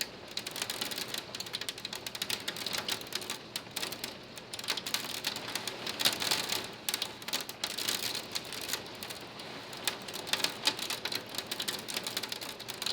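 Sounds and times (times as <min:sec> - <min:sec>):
hail ticking on screen: 0:09.8 - 0:12.9.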